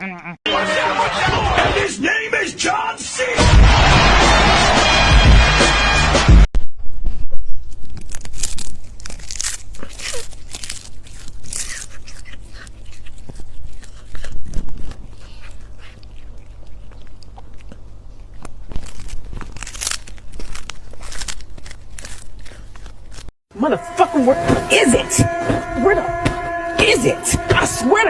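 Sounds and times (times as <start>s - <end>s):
cat crunching and chewing: 7.9s - 23.3s
steady low hum: 23.5s - 28.0s.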